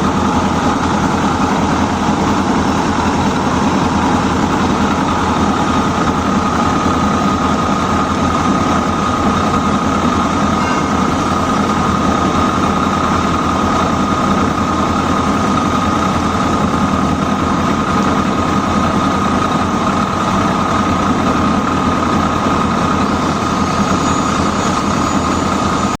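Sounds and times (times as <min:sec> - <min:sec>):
metal-cutting machine whine: 0:00.0 - 0:26.0.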